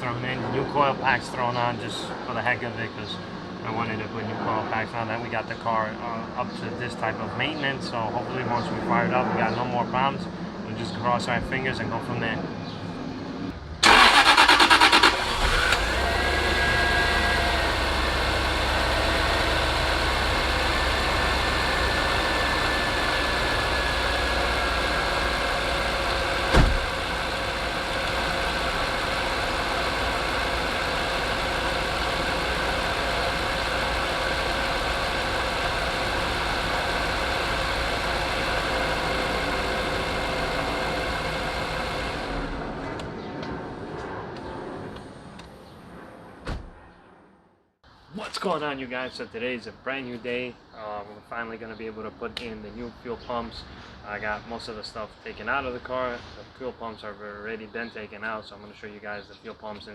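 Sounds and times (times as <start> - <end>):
car engine cranking: 13.8 - 42.8
car engine idling with whine: 15.1 - 43.3.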